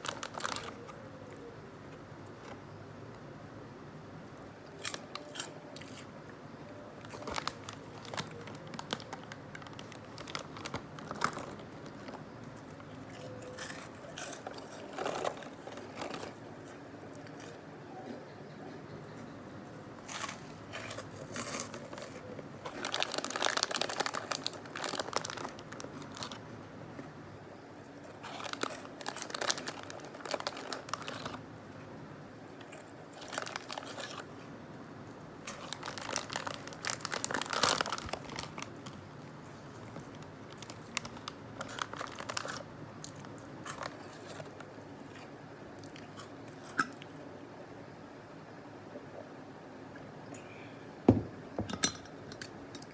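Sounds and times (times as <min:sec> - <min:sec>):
crunchy snack being chewed: 0:04.4 - 0:06.4, 0:07.0 - 0:18.2, 0:20.0 - 0:26.5, 0:27.8 - 0:31.9, 0:32.6 - 0:47.2.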